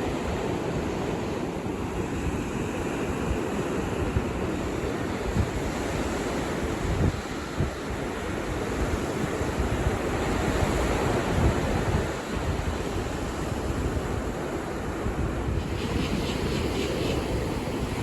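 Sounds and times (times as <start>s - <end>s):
ocean surf breaking: 0.0s - 18.0s
wind buffeting microphone: 0.2s - 18.0s.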